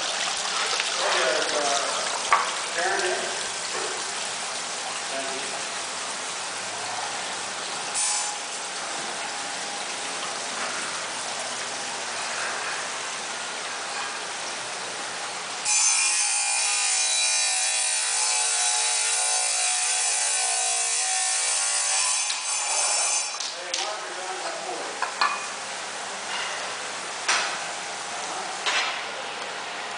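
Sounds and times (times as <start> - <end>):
water splashing into stone basin: 0.0 - 11.5.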